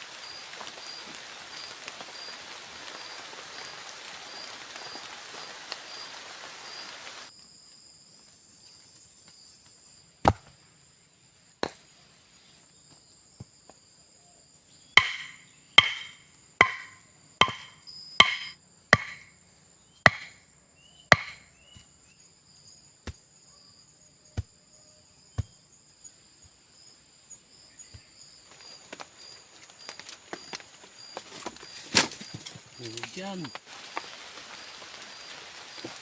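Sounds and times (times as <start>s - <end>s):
blade chopping wood: 10.2s - 10.5s, 15.0s - 19.3s, 20.1s - 20.4s, 21.1s - 21.4s.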